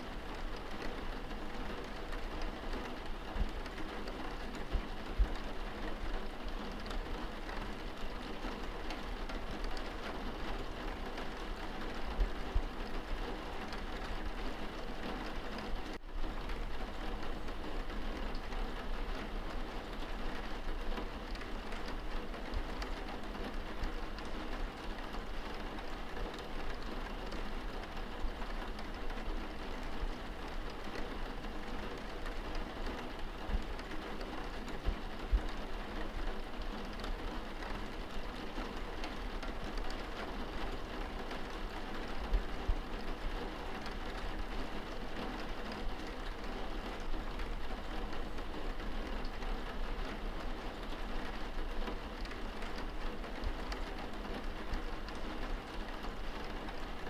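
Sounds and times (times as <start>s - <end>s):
rain on window glass: 0.0s - 57.0s.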